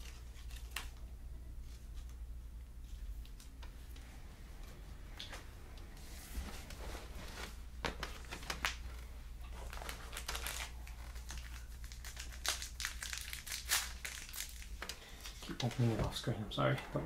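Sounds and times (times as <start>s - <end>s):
card pack wrapper crinkling: 8.0s - 15.9s.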